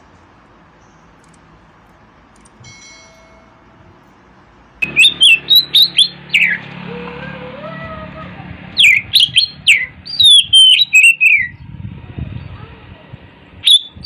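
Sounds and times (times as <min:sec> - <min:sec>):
bird singing whistled notes: 0:04.8 - 0:06.6, 0:08.8 - 0:11.7, 0:13.6 - 0:14.0.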